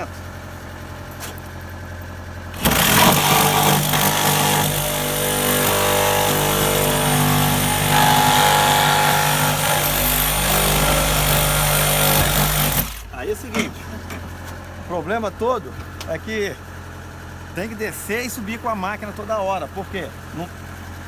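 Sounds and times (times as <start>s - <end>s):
power saw cutting wood: 2.5s - 13.2s.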